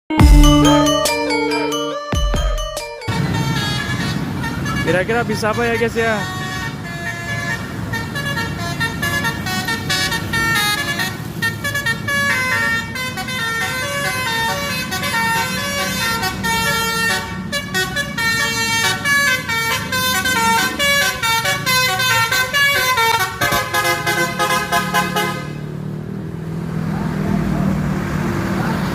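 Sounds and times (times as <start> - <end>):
bus horn playing fast melody: 0.1 - 2.2, 2.8 - 25.7
bus engine rumble: 3.1 - 28.9.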